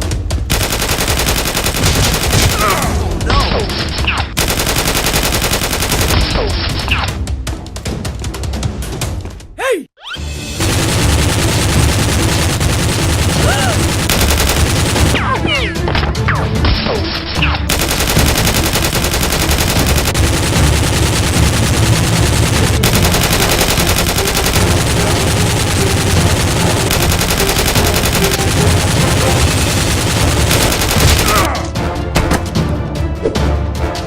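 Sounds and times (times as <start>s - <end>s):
rapid automatic gunfire: 0.5s - 2.8s, 4.4s - 6.9s, 10.6s - 15.2s, 17.7s - 31.5s.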